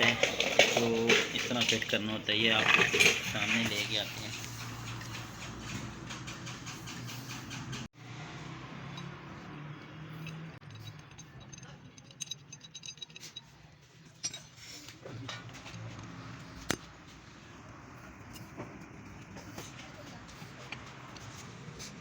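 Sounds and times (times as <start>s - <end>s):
metallic clinks of tools: 10.2s - 14.7s.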